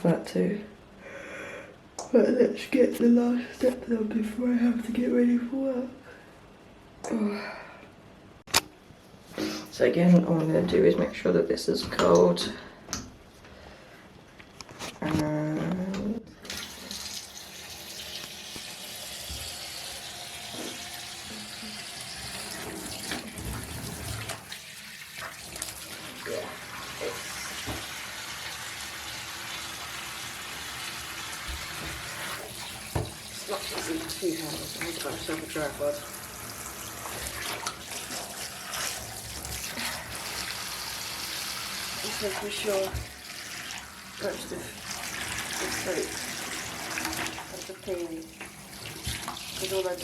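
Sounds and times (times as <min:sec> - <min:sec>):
water running into bathtub: 0:16.4 - 0:50.0.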